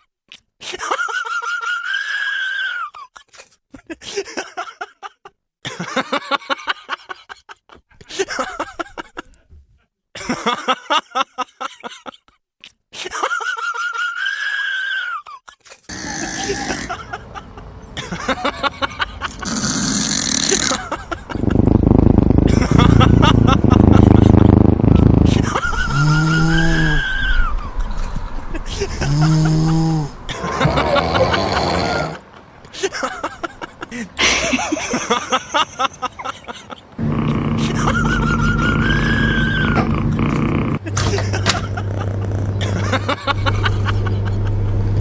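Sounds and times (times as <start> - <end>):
people laughing: 15.9 - 21.6, 22.4 - 24.5, 25.2 - 40.0, 40.8 - 44.8
loud low rumble: 20.8 - 31.6, 42.6 - 45.0
steady high squeal: 25.6 - 31.4.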